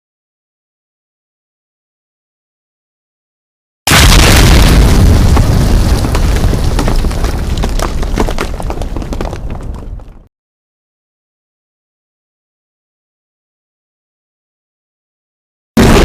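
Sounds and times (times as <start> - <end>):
explosion with rumble and cracks: 3.9 - 10.3, 15.8 - 16.0.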